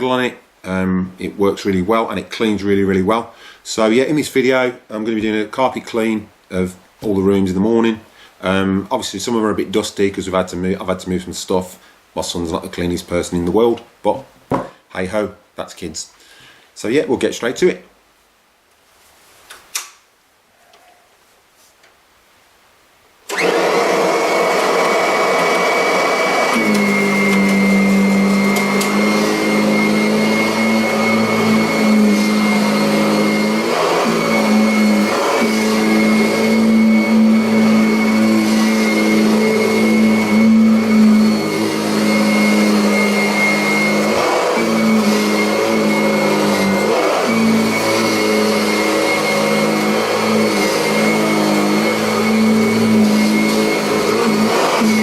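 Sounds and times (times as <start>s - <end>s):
vacuum cleaner running on carpet: 23.3s - 55.0s.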